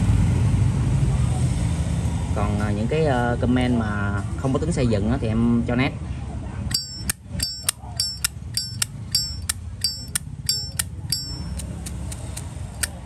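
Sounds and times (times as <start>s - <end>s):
lighter lid ringing open: 6.7s - 13.0s.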